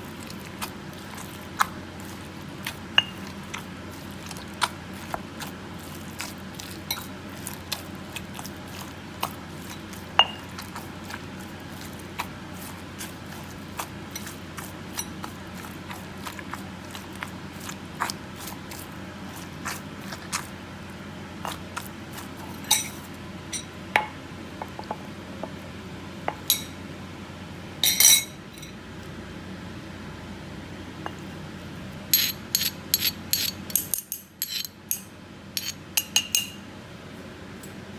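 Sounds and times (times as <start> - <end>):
utensils clinking against dishes: 3.0 - 3.3, 9.7 - 10.6, 22.6 - 24.1, 26.3 - 26.8, 27.8 - 28.8, 32.1 - 36.6
kitchenware clattering: 22.7 - 24.2, 26.3 - 26.8, 27.8 - 28.7, 32.2 - 36.6.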